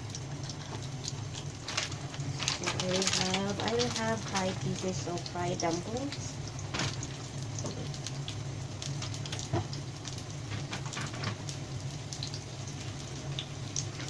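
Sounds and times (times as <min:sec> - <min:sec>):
dumplings sizzling in oil: 0:00.0 - 0:14.0
low steady hum: 0:00.0 - 0:14.0.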